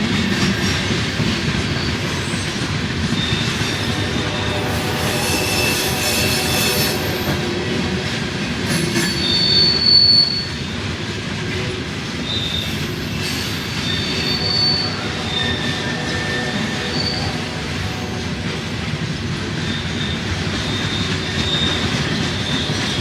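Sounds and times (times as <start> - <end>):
wheel flanges squealing: 0.5 - 10.7, 12.2 - 23.0.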